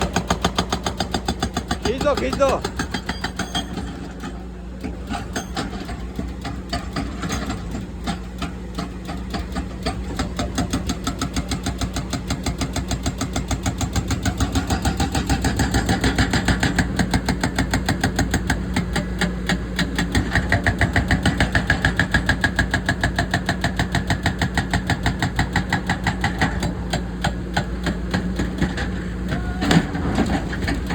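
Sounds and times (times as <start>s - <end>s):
breaker hammering concrete: 0.0s - 4.2s, 9.8s - 30.9s
engine humming: 23.8s - 30.9s.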